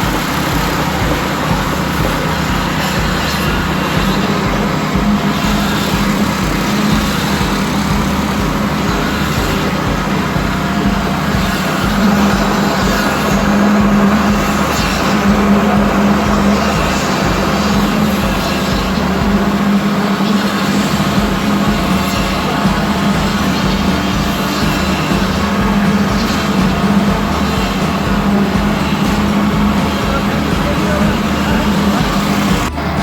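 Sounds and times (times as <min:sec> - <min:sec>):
heavy machinery engine droning: 0:00.0 - 0:33.0.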